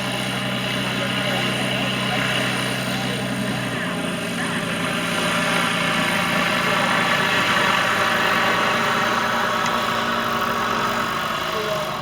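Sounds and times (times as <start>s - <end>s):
aircraft piston engine idling: 0.0s - 12.0s.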